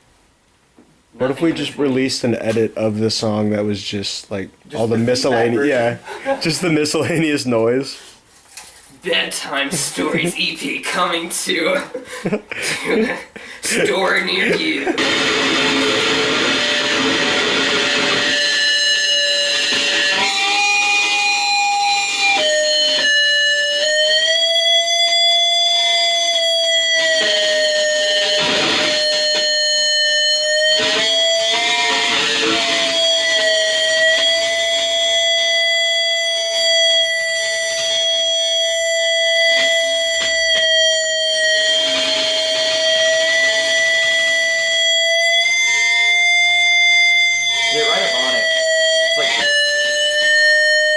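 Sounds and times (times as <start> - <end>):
electric guitar feedback: 14.1 - 50.9.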